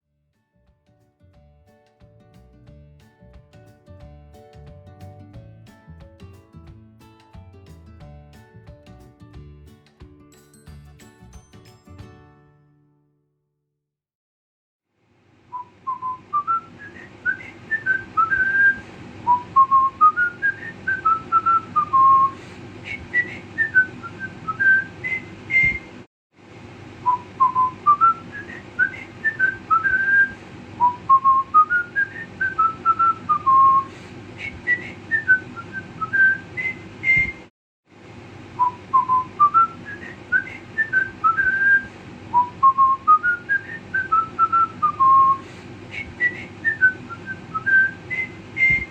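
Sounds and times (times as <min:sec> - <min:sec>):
whistled tune: 0:15.5 - 0:25.9, 0:27.0 - 0:37.5, 0:38.6 - 0:45.4, 0:46.0 - 0:48.9.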